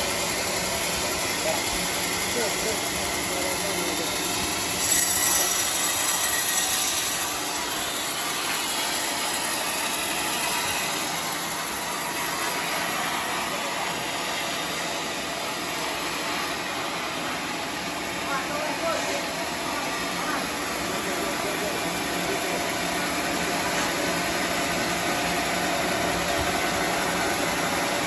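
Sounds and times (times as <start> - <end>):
band sawmill running: 0.0 - 28.0.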